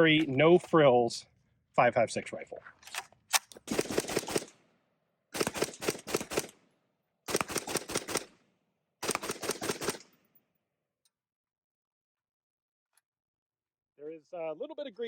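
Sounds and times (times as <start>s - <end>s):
rifle shots: 3.3s - 4.6s, 5.4s - 6.6s, 7.3s - 8.4s, 9.0s - 10.2s.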